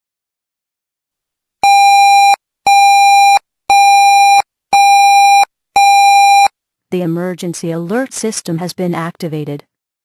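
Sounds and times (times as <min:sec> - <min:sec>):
electronic alert beeps: 0:01.6 - 0:06.5.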